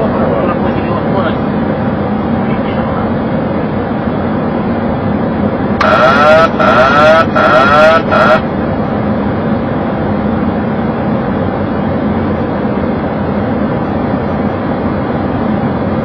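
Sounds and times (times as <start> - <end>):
hum of airflow and engines: 0.0 - 16.0
warbling warning wail: 5.8 - 8.5.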